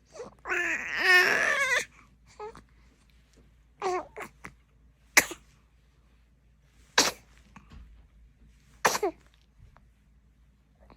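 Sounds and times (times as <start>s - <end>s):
baby sneezing: 5.2s - 5.5s, 7.0s - 7.4s, 8.8s - 9.3s.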